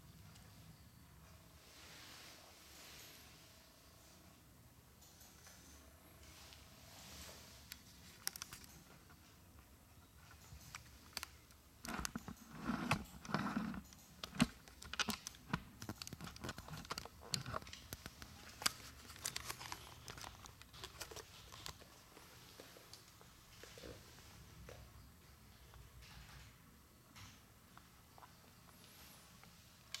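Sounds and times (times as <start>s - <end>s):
plastic parts clicking and tapping: 8.0s - 9.2s, 10.3s - 21.8s
rustling: 10.3s - 24.4s.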